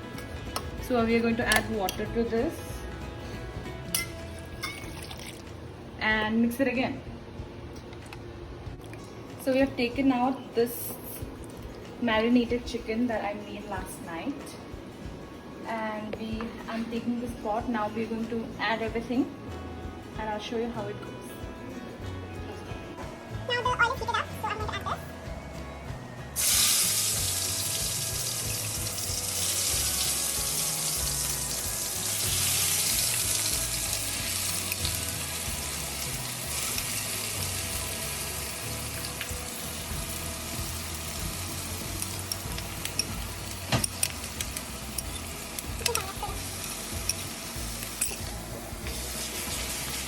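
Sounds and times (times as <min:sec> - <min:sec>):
chicken sizzling in hot oil: 0:26.4 - 0:50.0.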